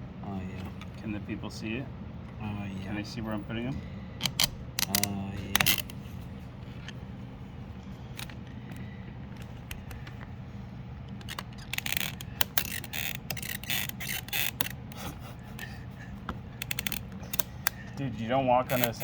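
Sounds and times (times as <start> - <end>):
steady low hum: 0.0 - 19.0
plastic parts clicking and scraping: 4.2 - 7.0, 8.1 - 10.3, 11.0 - 18.0, 18.6 - 19.0.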